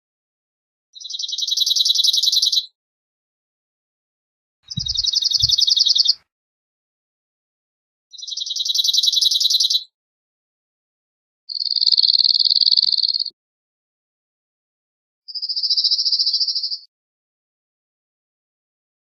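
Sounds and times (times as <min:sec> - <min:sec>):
bird singing rapid trills: 0:01.0 - 0:02.7, 0:04.7 - 0:06.2, 0:08.2 - 0:09.9, 0:11.5 - 0:13.3.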